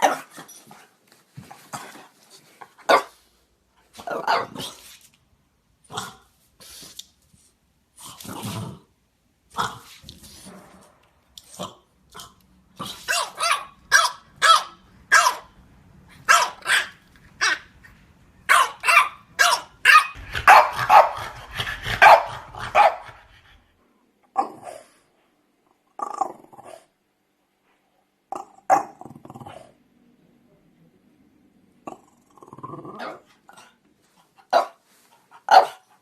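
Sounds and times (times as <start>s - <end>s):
dogs barking: 13.1s - 15.5s, 16.2s - 17.7s, 18.5s - 23.2s, 34.5s - 34.8s, 35.5s - 35.9s.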